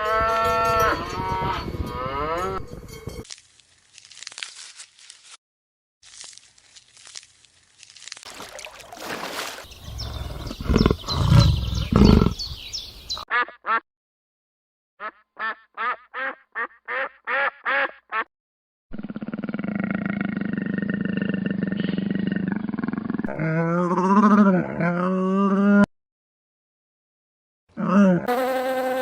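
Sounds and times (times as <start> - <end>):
duck quacking: 13.3 - 13.8, 15.0 - 18.3.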